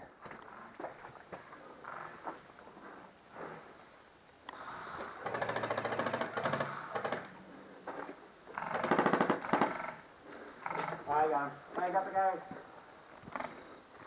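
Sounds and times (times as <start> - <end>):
airsoft rifle firing bursts: 5.2 - 7.2, 8.6 - 10.0.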